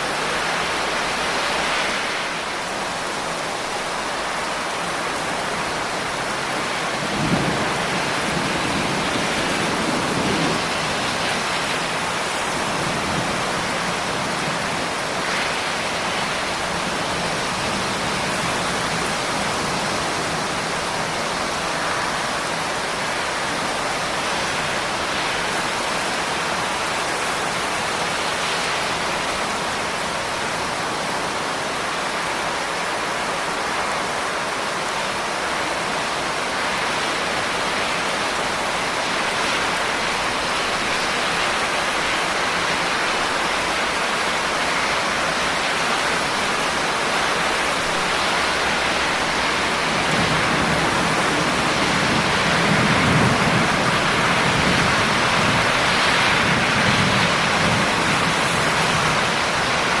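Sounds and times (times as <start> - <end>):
heavy rain: 0.0 - 60.0
rolling thunder: 6.9 - 14.8, 48.6 - 60.0.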